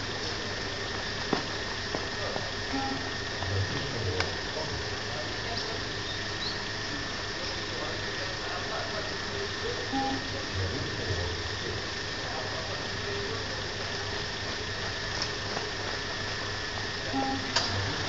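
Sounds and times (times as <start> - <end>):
steady background hiss: 0.0 - 18.0
short electronic beeps: 2.7 - 3.1, 9.9 - 10.3, 17.1 - 17.6.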